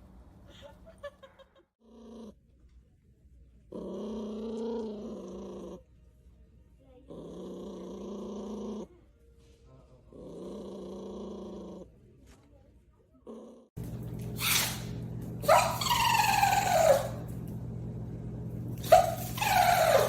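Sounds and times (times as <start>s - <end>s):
dog howling: 15.4s - 17.3s, 18.8s - 20.0s.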